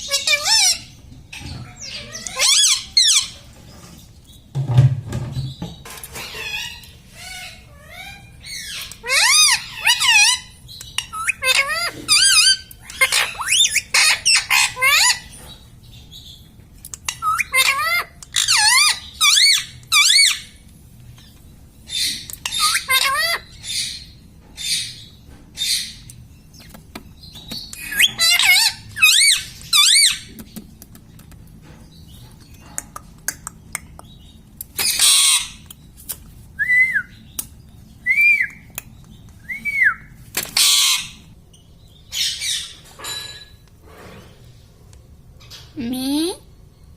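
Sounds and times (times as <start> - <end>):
parakeet warbling calls: 0.0 - 1.0, 1.7 - 3.4, 6.3 - 15.3, 17.1 - 20.5, 21.9 - 24.9, 27.8 - 30.3, 34.8 - 35.6, 40.6 - 41.3
parakeet harsh squawk: 9.0 - 10.4, 11.1 - 15.3, 17.2 - 20.5, 22.0 - 24.0, 27.8 - 30.2, 34.8 - 35.6, 40.6 - 41.2.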